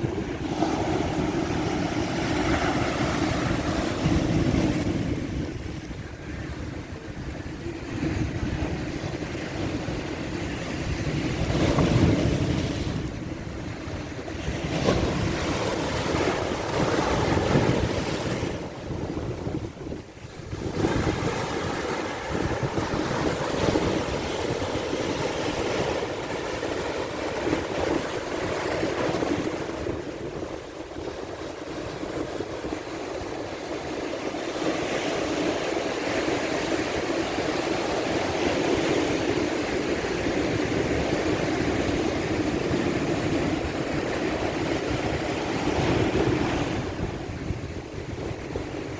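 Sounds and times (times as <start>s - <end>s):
ocean surf breaking on beach: 0.0s - 48.9s.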